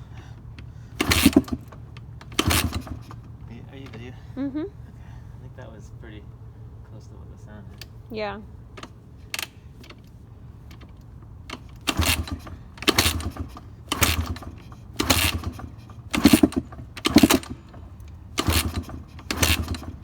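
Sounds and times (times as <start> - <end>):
dirt bike engine turning over: 0.4 - 4.1, 8.8 - 20.0.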